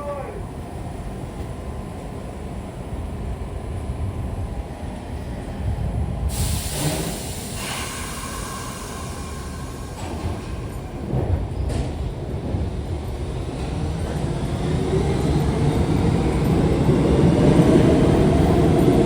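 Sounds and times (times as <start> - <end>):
subway train rumble: 0.0 - 19.0
loud air hiss: 6.3 - 10.2.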